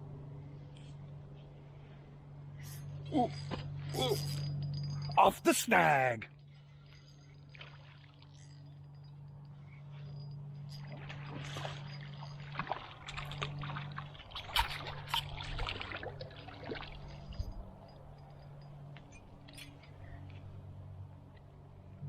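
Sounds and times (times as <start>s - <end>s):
steady low hum: 0.0s - 22.0s
water splashing and sloshing: 6.7s - 8.6s, 10.8s - 18.0s.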